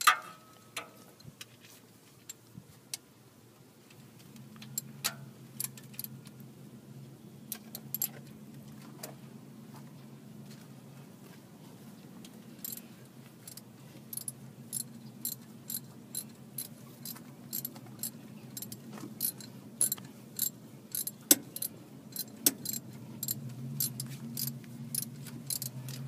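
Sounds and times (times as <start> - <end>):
socket ratchet clicking: 14.2 - 26.0.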